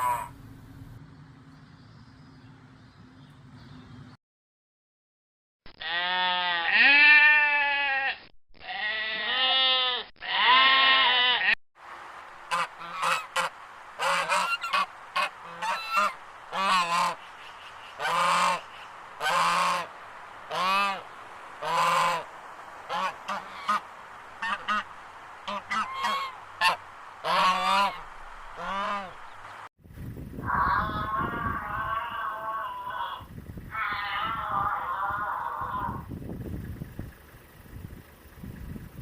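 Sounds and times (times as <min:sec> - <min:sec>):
long loud animal calls: 0:00.0 - 0:00.4, 0:30.4 - 0:36.1
short animal calls: 0:00.0 - 0:00.4.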